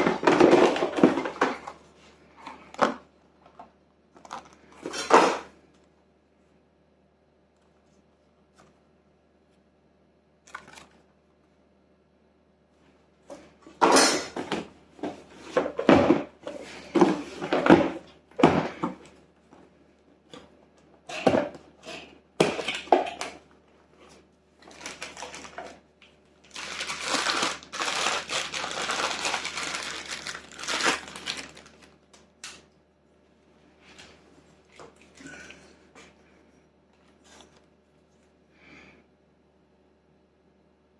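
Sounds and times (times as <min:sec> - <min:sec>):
packaging crinkling and knocks: 0:24.6 - 0:25.8, 0:26.4 - 0:31.9
wrapping rustling: 0:24.6 - 0:25.8, 0:26.4 - 0:32.0.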